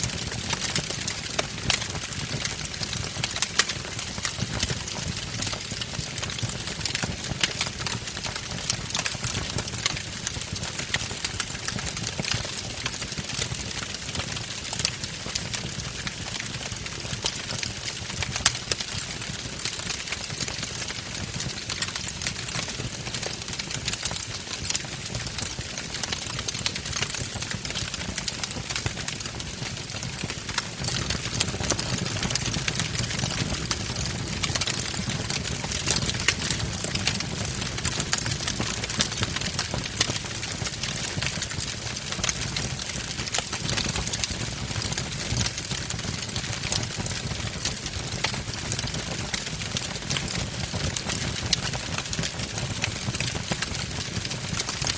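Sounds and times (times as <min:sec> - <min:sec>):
logs crackling and popping: 0:00.0 - 0:54.9
low rumble of flames: 0:00.0 - 0:54.9.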